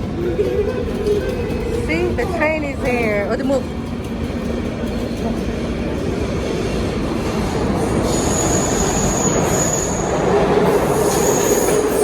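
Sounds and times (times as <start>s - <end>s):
subway train rumble: 0.0s - 12.0s
high-pitched squeal: 7.8s - 12.0s.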